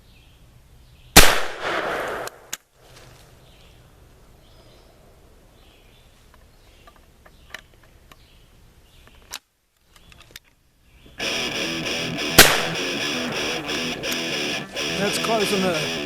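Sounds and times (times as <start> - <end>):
shotgun blast: 1.2 - 2.4, 12.4 - 12.8.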